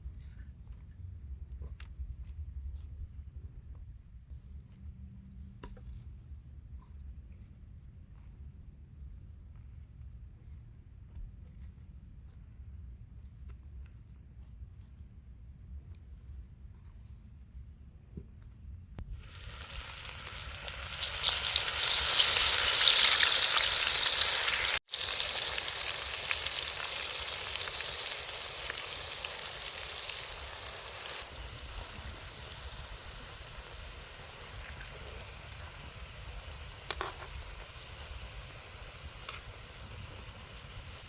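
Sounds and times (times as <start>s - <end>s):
battered mushrooms sizzling in oil: 19.0s - 41.0s.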